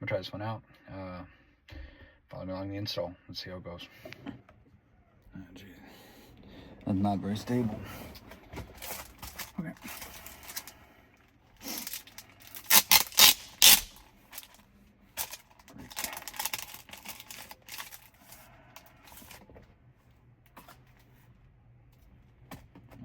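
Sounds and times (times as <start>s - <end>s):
packaging rustling: 8.6s - 10.8s, 11.6s - 14.6s, 15.2s - 19.4s
packaging ripping: 8.8s - 10.7s, 11.6s - 14.6s, 15.2s - 18.5s.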